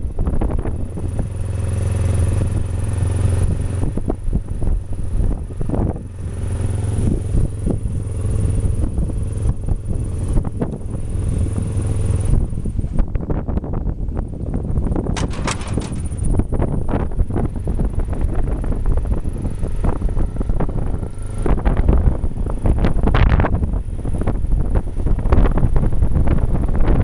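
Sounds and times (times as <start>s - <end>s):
motorcycle engine running: 0.0s - 27.0s
knocks and rattles: 15.1s - 16.9s.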